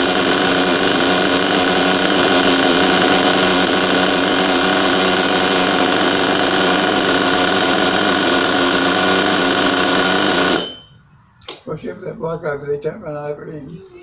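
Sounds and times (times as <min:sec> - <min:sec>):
small model car engine running: 0:00.0 - 0:10.8.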